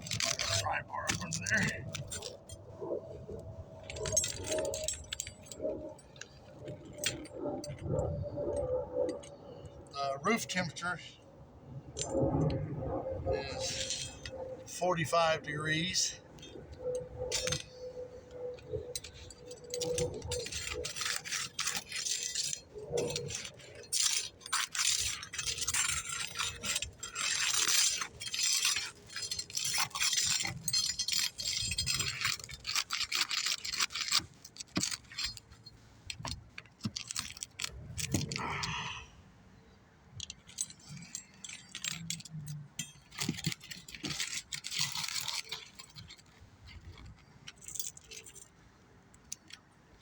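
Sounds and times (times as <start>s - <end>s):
pry bar scraping shingles: 0.0s - 2.8s, 13.4s - 15.1s, 15.7s - 38.4s, 40.2s - 48.6s.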